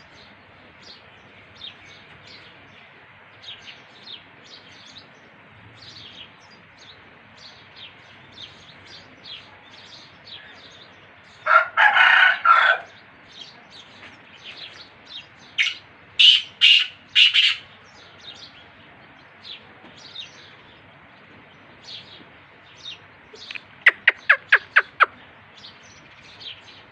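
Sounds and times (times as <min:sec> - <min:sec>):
small birds chirping: 0:00.0 - 0:26.9
francolin calling: 0:15.5 - 0:18.2, 0:23.4 - 0:25.8.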